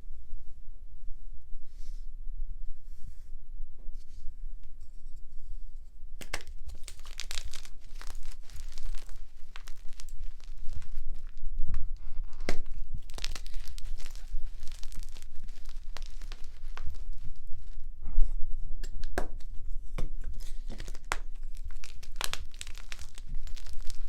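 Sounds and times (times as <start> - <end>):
chalk crunching and crackling: 6.2 - 11.4, 12.0 - 17.8, 20.1 - 24.0.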